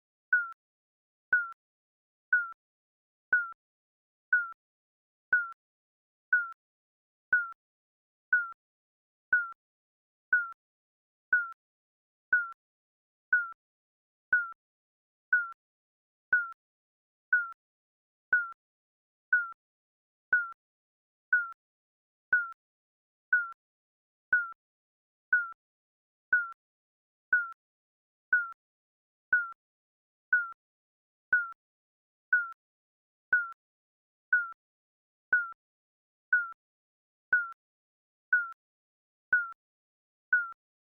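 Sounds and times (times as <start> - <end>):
timer beeping: 0.3 - 0.6, 1.3 - 1.6, 2.3 - 2.6, 3.3 - 3.6, 4.3 - 4.6, 5.3 - 5.6, 6.3 - 6.6, 7.3 - 7.6, 8.3 - 8.6, 9.3 - 9.6, 10.3 - 10.6, 11.3 - 11.6, 12.3 - 12.6, 13.3 - 13.6, 14.3 - 14.6, 15.3 - 15.6, 16.3 - 16.6, 17.3 - 17.6, 18.3 - 18.6, 19.3 - 19.6, 20.3 - 20.6, 21.3 - 21.6, 22.3 - 22.6, 23.3 - 23.6, 24.3 - 24.6, 25.3 - 25.6, 26.3 - 26.6, 27.3 - 27.6, 28.3 - 28.6, 29.3 - 29.6, 30.3 - 30.6, 31.3 - 31.6, 32.3 - 32.6, 33.3 - 33.6, 34.3 - 34.6, 35.3 - 35.6, 36.3 - 36.6, 37.3 - 37.6, 38.3 - 38.6, 39.3 - 39.6, 40.3 - 40.6.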